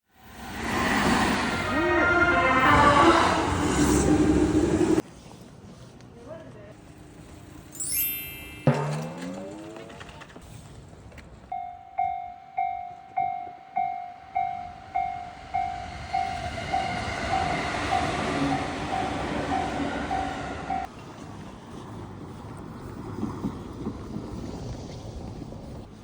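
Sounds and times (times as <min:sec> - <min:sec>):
train rumbling past: 0:00.2 - 0:05.1, 0:06.8 - 0:26.0
level crossing warning bell: 0:07.3 - 0:09.8, 0:11.5 - 0:20.9.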